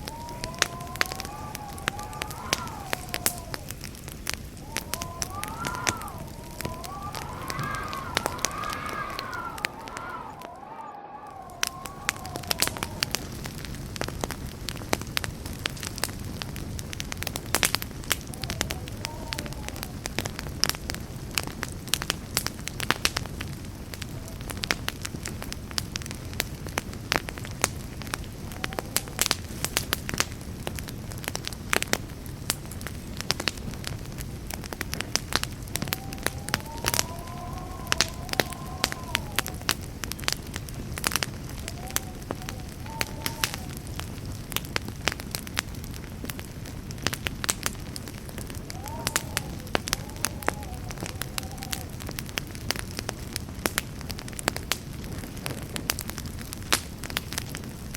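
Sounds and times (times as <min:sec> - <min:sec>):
faint wavering whistle: 0:00.0 - 0:03.7, 0:04.6 - 0:13.2, 0:35.7 - 0:39.7
campfire crackling and popping: 0:00.0 - 0:57.9
low rush of flame: 0:00.0 - 0:57.9.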